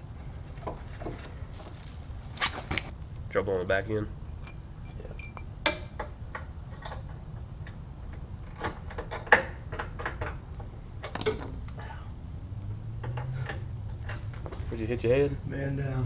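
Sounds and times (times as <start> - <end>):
steady low hum: 0.0 - 16.0
metallic clinks of tools: 1.6 - 2.9, 4.4 - 6.0.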